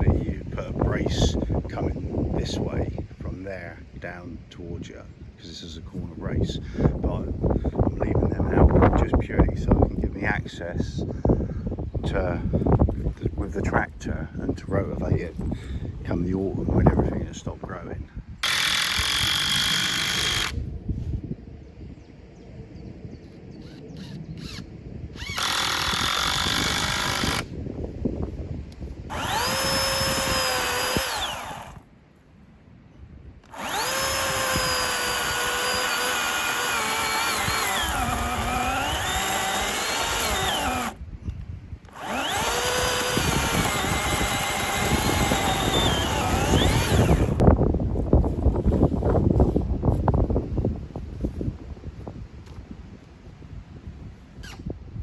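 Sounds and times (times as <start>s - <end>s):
wind buffeting microphone: 0.0s - 31.9s, 32.8s - 55.0s
power tool whining: 18.4s - 20.6s, 23.6s - 27.5s, 29.1s - 31.8s, 33.4s - 47.5s.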